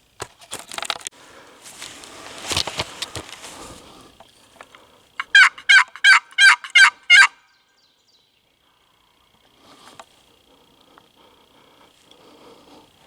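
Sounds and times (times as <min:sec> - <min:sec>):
turkey call yelps: 0:05.2 - 0:07.5.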